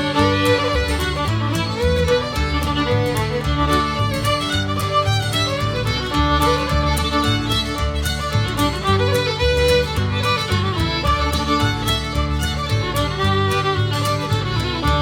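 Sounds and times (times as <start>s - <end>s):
upbeat fiddle tune: 0.0s - 15.0s.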